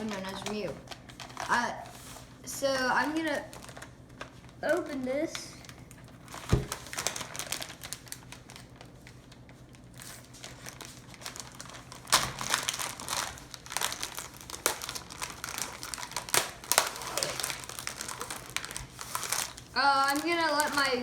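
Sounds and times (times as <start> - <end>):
plastic wrapper crinkling: 0.0 - 21.0
thump: 6.5 - 6.8.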